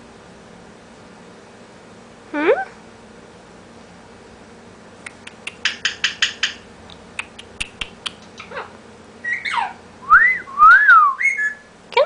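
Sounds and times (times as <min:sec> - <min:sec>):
parrot clicks: 0:05.0 - 0:08.5
parrot raspy notes: 0:07.2 - 0:09.8.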